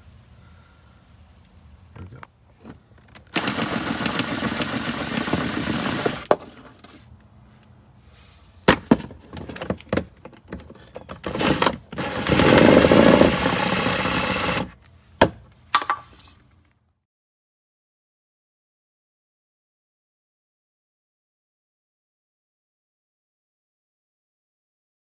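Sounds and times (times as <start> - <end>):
power wrench running: 3.1 - 6.3, 11.1 - 14.8.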